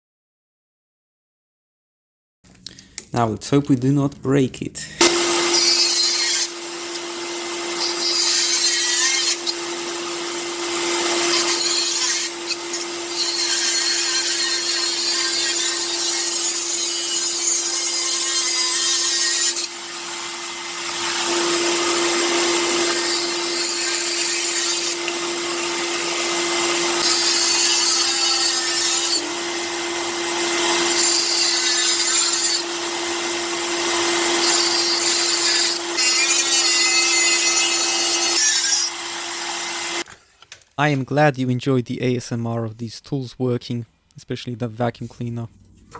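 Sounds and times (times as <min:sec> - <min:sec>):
power tool cutting: 0:04.9 - 0:40.6
vacuum cleaner running: 0:05.0 - 0:08.5, 0:09.3 - 0:11.5, 0:12.3 - 0:13.1, 0:19.6 - 0:23.4, 0:24.8 - 0:31.4, 0:32.6 - 0:34.6, 0:38.9 - 0:40.1.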